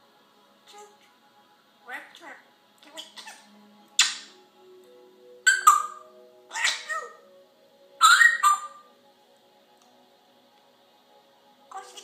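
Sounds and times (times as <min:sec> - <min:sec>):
parrot squawking: 0:01.8 - 0:04.4, 0:05.4 - 0:07.3, 0:08.0 - 0:08.9, 0:11.7 - 0:12.0.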